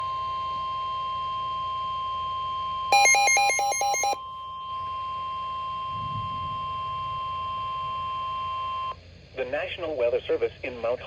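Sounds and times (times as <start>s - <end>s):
rapidly alternating electronic beeps: 3.0s - 4.2s.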